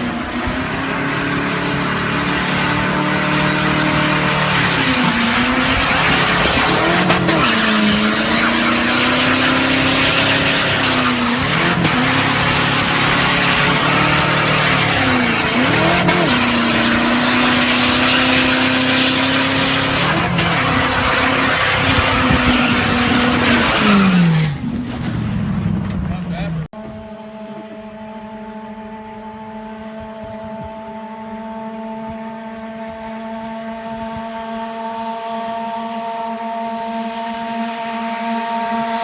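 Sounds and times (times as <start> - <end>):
car engine revving high: 0.0 - 24.7, 25.4 - 39.0
spinning tyres hissing: 0.7 - 25.7.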